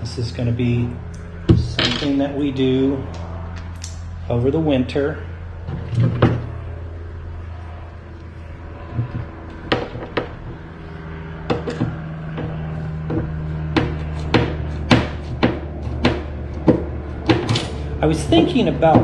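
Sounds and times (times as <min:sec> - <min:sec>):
steady low hum: 0:00.0 - 0:19.0
metal hardware knocking on wood: 0:11.5 - 0:12.5, 0:13.1 - 0:19.0.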